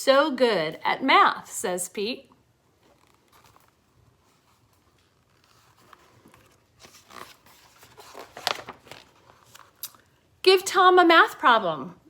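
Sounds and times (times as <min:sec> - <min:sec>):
paper page turning: 0:02.8 - 0:10.0.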